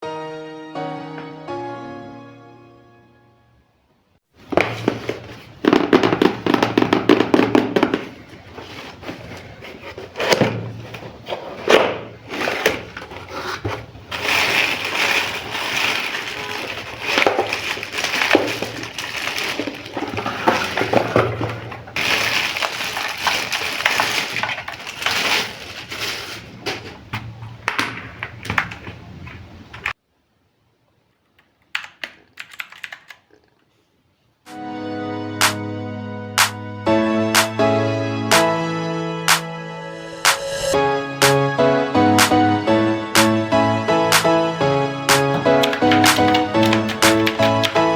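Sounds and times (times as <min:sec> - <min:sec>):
packaging rustling and crackling: 0:04.4 - 0:30.0, 0:45.3 - 0:47.9.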